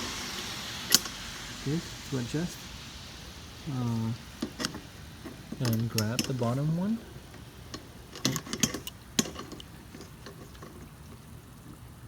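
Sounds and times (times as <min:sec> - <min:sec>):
wrenches clicking on metal: 0:04.5 - 0:06.7, 0:07.3 - 0:11.0.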